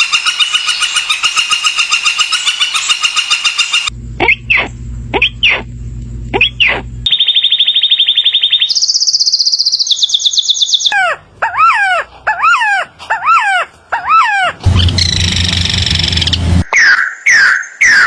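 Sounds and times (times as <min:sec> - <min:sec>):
swooping bird calls: 0:00.0 - 0:05.7, 0:06.3 - 0:18.0
low hum: 0:03.9 - 0:07.1, 0:14.6 - 0:16.7.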